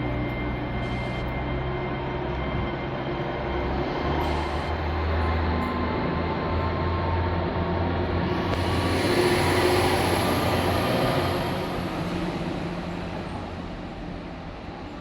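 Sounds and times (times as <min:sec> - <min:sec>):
train rumbling past: 0:05.4 - 0:15.0
low hum: 0:08.0 - 0:15.0
thin high whine: 0:08.3 - 0:14.0.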